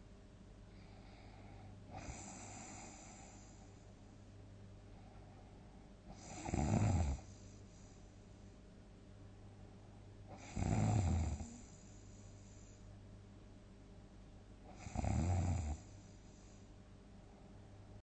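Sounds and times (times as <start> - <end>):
person snoring loudly: 6.2 - 7.3, 10.4 - 11.6, 14.7 - 15.8.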